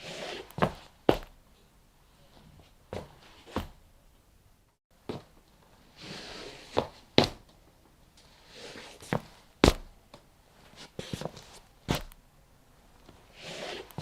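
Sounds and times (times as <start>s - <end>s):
sole scraping along floor: 0.0s - 1.3s, 5.9s - 7.4s, 8.3s - 9.9s, 10.6s - 12.2s, 13.2s - 14.0s.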